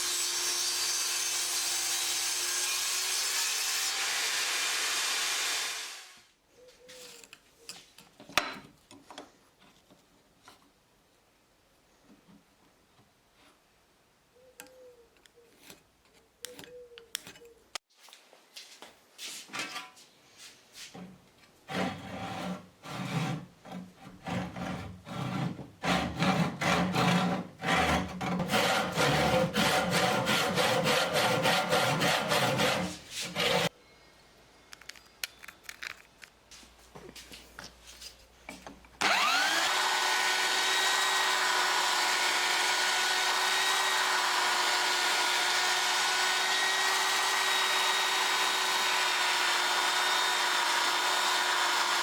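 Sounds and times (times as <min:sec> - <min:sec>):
fast scraping strokes: 0:28.5 - 0:33.7
light clicks and handling: 0:34.7 - 0:39.0
power tool motor running: 0:39.0 - 0:52.0.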